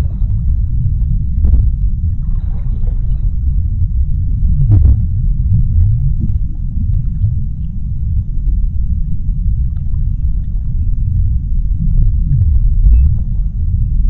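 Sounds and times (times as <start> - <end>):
deep underwater rumble: 0.0 - 14.0
faint ticks: 5.6 - 13.7.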